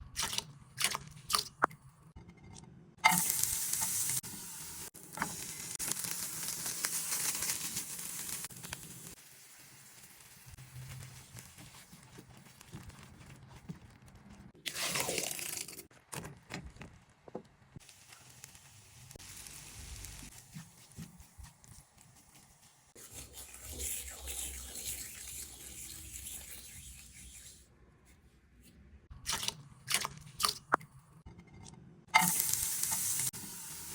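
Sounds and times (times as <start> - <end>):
food sizzling in a hot pan: 3.1 - 11.0, 17.8 - 20.7, 32.2 - 33.9.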